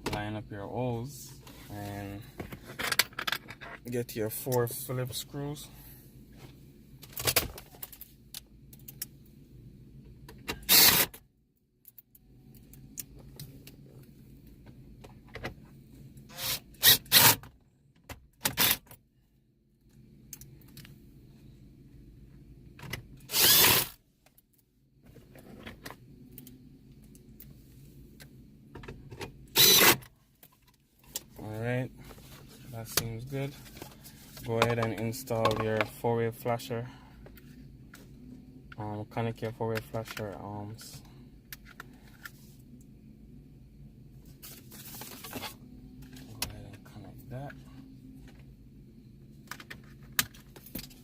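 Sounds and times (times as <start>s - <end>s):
cordless drill driving screws: 10.6s - 11.1s, 16.3s - 17.4s, 23.3s - 24.0s, 29.6s - 30.0s.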